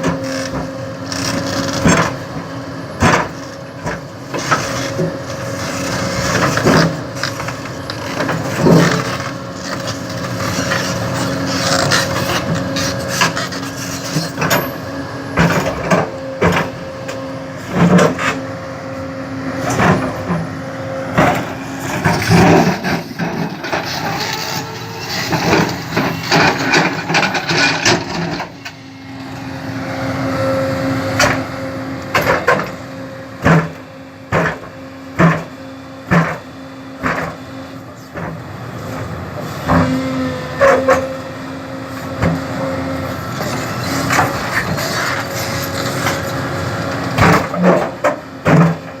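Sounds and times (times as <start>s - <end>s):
construction machine engine droning: 0.0s - 49.0s.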